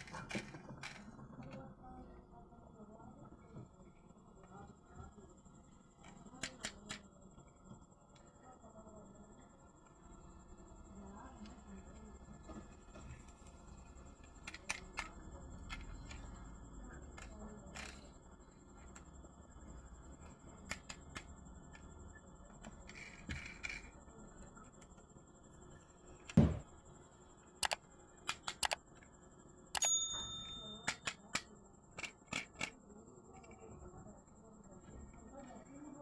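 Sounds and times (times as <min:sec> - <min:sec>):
toy and packaging clicks: 0:06.0 - 0:07.0, 0:14.3 - 0:16.3, 0:27.6 - 0:28.8, 0:30.8 - 0:32.8
loud thump: 0:26.4 - 0:26.7.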